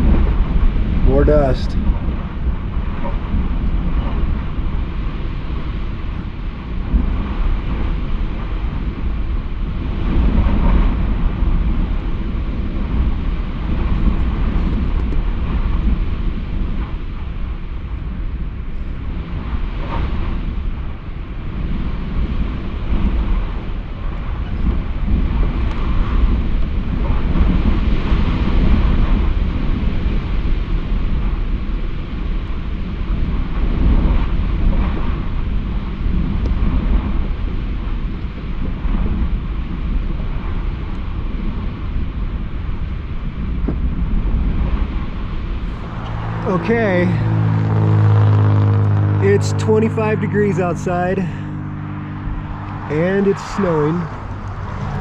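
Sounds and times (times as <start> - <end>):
gusty wind buffeting microphone: 0.0 - 55.0.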